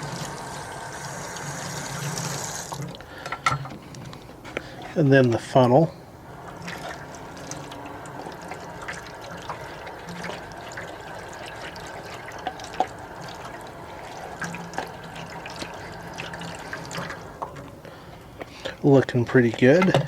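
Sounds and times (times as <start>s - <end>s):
water running from a sink tap: 0.0s - 2.9s, 6.4s - 17.6s.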